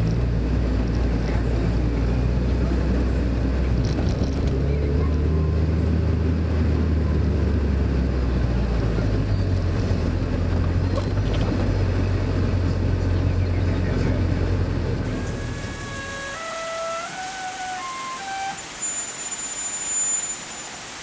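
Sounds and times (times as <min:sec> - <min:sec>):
car engine running: 0:00.0 - 0:16.1
tyre and road noise: 0:00.0 - 0:21.0.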